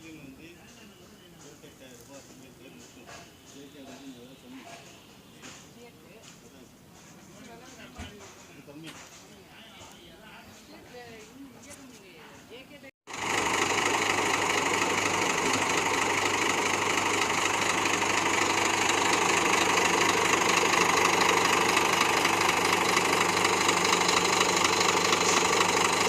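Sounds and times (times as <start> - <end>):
engine running steadily: 13.1 - 26.0.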